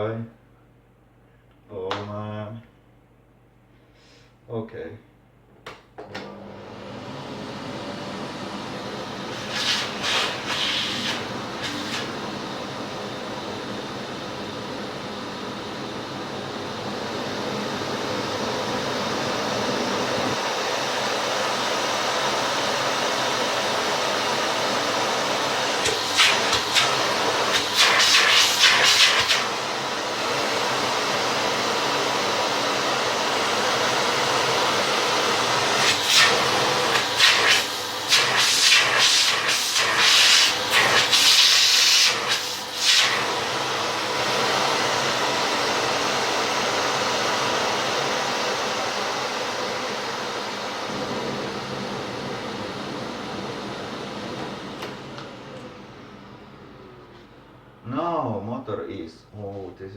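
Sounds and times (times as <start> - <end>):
vacuum cleaner motor running: 6.0 - 57.4
hiss of rushing air: 9.2 - 12.3, 25.8 - 29.6.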